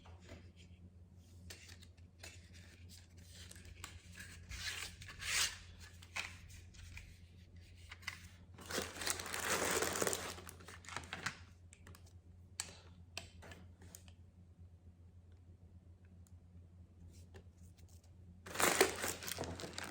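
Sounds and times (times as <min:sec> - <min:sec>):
packaging crinkling and rustling: 0:08.0 - 0:12.1, 0:18.5 - 0:19.9.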